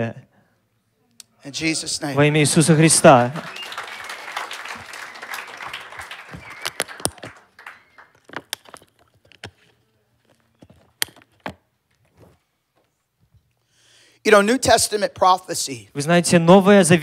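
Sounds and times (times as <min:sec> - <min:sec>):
scattered applause: 0:02.3 - 0:08.7
clicks and knocks: 0:08.1 - 0:11.6.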